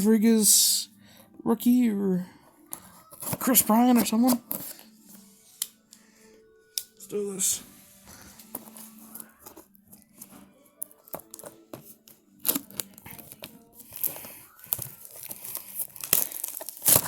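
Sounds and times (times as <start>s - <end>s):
wrapping tearing and crinkling: 8.4s - 17.0s.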